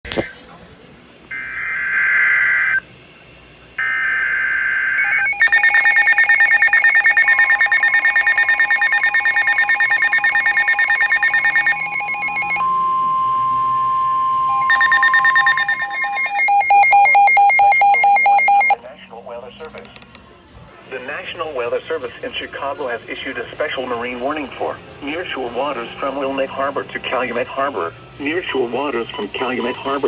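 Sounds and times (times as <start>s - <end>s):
steady warning alarm tone: 4.8s - 18.8s, 28.2s - 30.0s
fast pulsing electronic beeps: 5.0s - 18.8s, 28.3s - 30.0s
buzzy digital header bursts: 14.5s - 18.8s.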